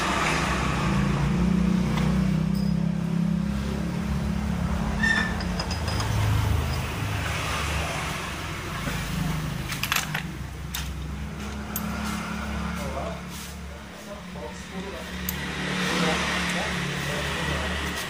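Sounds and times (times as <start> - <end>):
sharp metallic clicks: 15.0 - 16.7.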